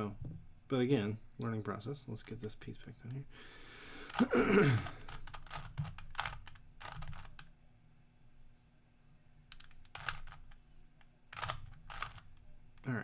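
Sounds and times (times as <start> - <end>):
plastic puzzle cube clicking: 5.0 - 7.5, 9.5 - 10.6, 11.3 - 12.4.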